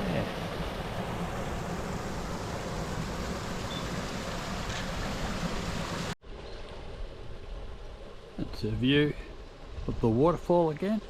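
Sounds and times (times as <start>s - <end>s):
water rushing over rock waterfall: 0.0s - 6.2s.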